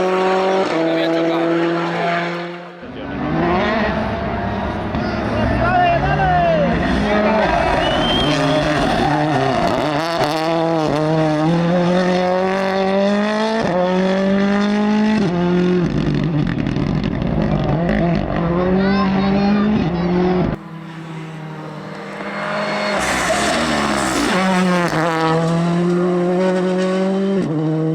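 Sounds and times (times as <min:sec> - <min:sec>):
rally car engine revving: 0:00.0 - 0:27.9.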